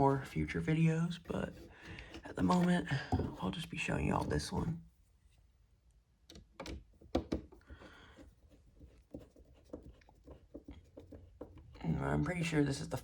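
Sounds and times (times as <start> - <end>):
small clicks and knocks: 6.2 - 11.8.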